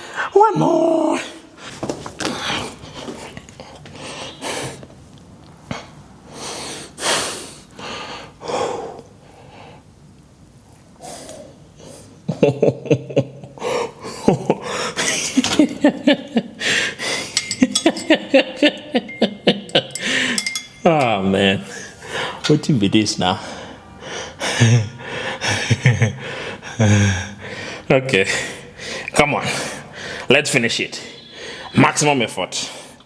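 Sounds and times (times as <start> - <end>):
man breathing hard: 5.7 - 9.9, 13.6 - 15.4, 16.6 - 17.6, 19.9 - 20.4, 21.7 - 22.5, 23.4 - 30.3, 31.1 - 31.8.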